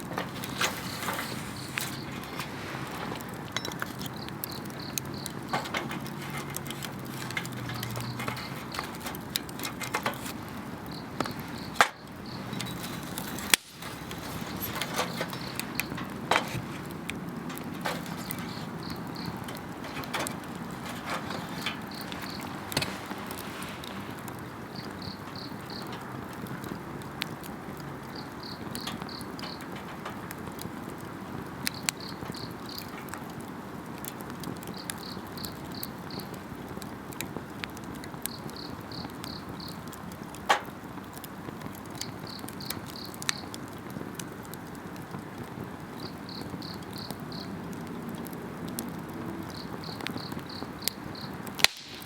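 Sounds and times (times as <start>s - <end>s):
campfire crackling and popping: 0.0s - 52.0s
insects chirping: 0.1s - 26.8s, 27.9s - 30.3s, 31.5s - 33.3s, 38.3s - 39.8s, 42.0s - 43.5s, 46.0s - 47.5s, 49.5s - 51.5s.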